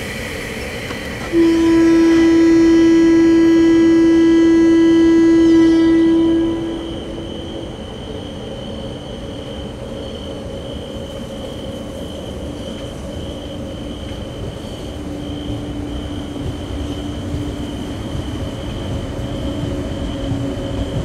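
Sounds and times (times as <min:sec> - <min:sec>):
train rumbling: 0:00.0 - 0:21.0
train horn: 0:01.2 - 0:07.8.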